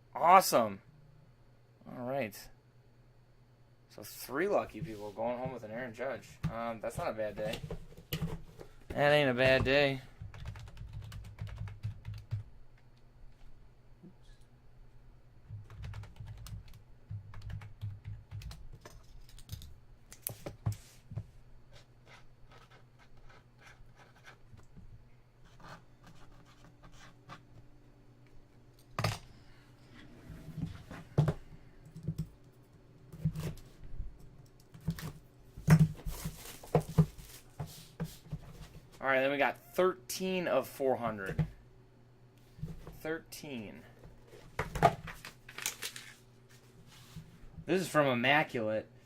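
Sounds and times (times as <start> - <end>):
low steady hum: 0.0 - 49.0.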